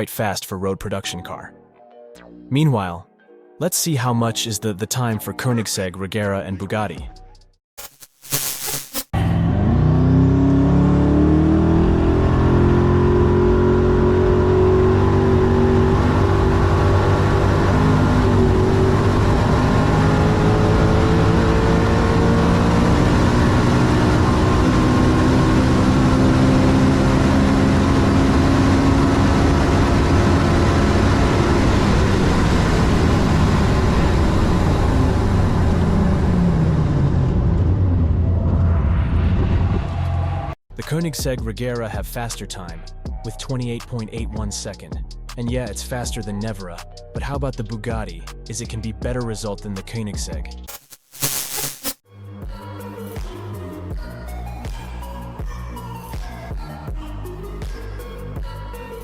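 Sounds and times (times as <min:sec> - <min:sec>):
car engine at full throttle: 0:09.2 - 0:40.5.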